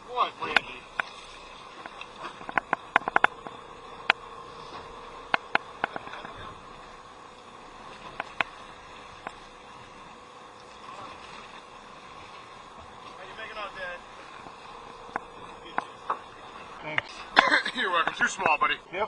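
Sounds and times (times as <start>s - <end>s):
steady hum: 0.0s - 19.0s
sharp clicks and knocks: 1.8s - 4.2s, 5.3s - 6.4s, 8.1s - 8.5s.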